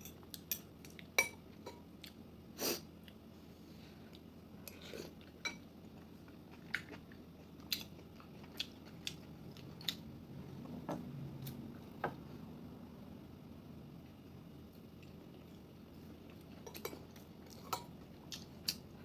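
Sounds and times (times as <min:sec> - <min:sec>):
person chewing: 0:04.2 - 0:10.1.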